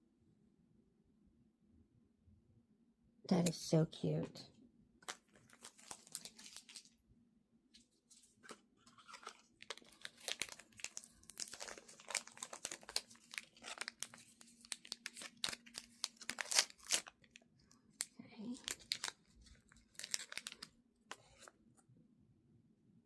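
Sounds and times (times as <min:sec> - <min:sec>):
plastic packaging crinkling: 0:05.0 - 0:07.0, 0:08.2 - 0:21.5.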